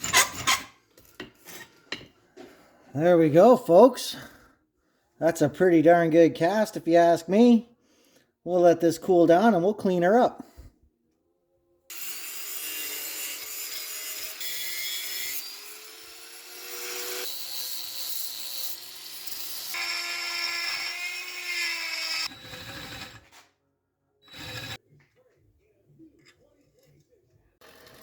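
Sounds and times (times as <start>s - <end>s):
power tool grinding metal: 11.9s - 23.4s, 24.2s - 24.8s.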